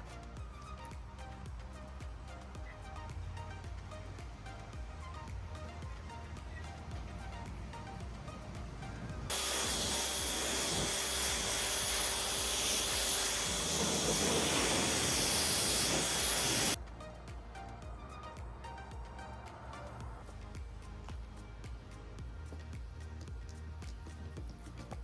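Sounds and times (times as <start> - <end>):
background music: 0.0 - 25.0
water spray hissing on car: 9.3 - 16.8.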